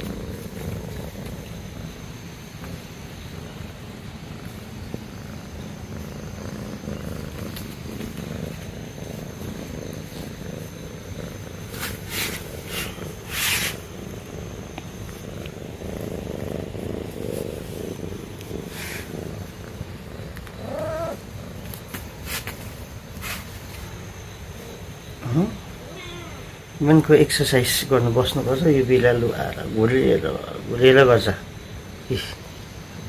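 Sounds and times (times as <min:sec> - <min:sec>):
cat purring: 0:00.0 - 0:33.0
short hissy bursts: 0:11.7 - 0:13.8, 0:22.2 - 0:23.7.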